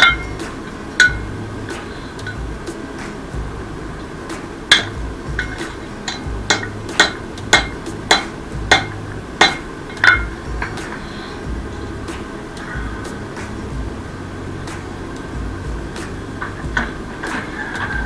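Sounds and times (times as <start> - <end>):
hammer striking metal on anvil: 0.0 - 2.4, 4.2 - 13.6.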